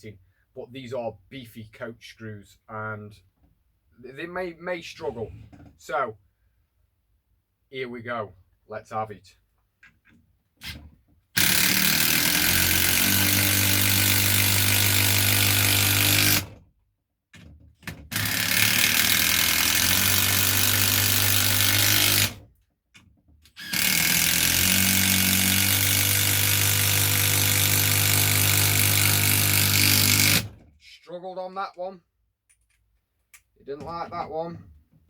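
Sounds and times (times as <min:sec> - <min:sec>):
impact driver hammering screw into wood: 0:11.4 - 0:16.6, 0:17.9 - 0:22.4, 0:23.5 - 0:30.5.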